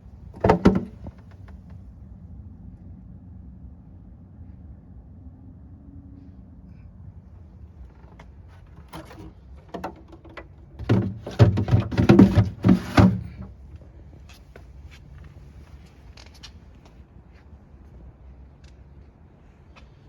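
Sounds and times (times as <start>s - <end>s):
handling clicks and knocks: 0.4s - 1.7s, 8.0s - 13.6s.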